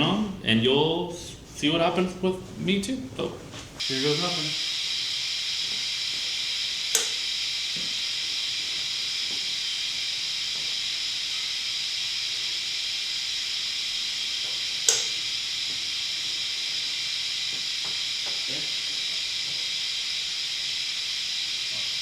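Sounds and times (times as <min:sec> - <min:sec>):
steady hiss: 0:00.0 - 0:22.0
short sharp clicks: 0:06.9 - 0:07.2, 0:14.9 - 0:15.2.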